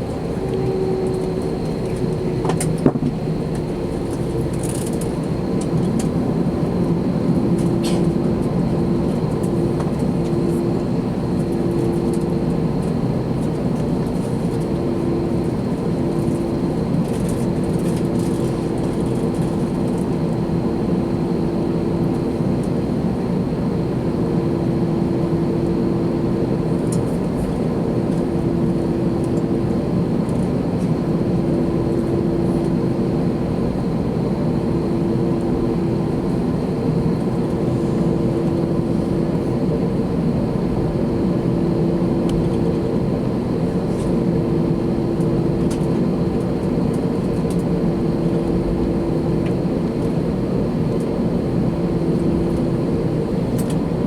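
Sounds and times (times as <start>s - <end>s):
low hum: 0.0s - 13.6s
jet engine roar in cabin: 0.0s - 54.0s.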